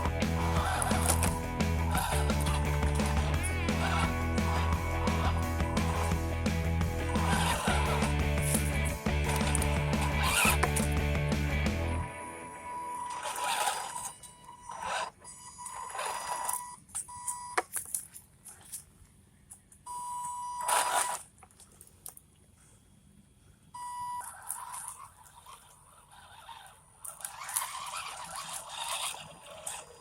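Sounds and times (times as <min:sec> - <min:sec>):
small electric motor whining: 0:00.0 - 0:06.2, 0:07.0 - 0:16.7, 0:20.6 - 0:21.2, 0:24.2 - 0:30.0
tyres scraping and crunching: 0:00.0 - 0:06.2, 0:07.0 - 0:12.0.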